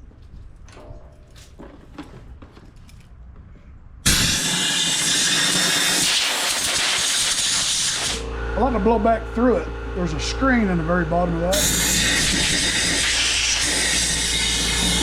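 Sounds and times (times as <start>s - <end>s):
air blow gun hissing: 4.1s - 8.2s, 11.5s - 15.0s.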